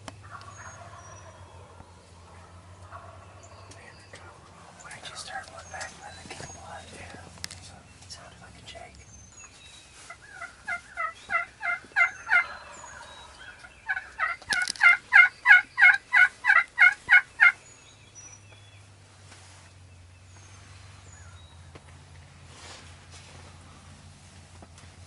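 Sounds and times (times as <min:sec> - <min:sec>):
faint songbird chirps: 0:00.0 - 0:22.4
turkey yelping: 0:00.3 - 0:03.2, 0:10.1 - 0:17.6.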